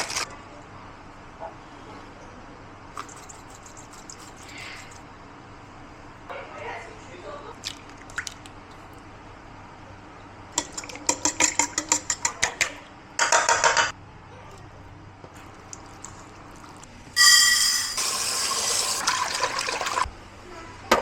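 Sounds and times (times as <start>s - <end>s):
dishes and utensils clinking: 17.2s - 18.4s
water running into a vessel: 17.8s - 20.1s.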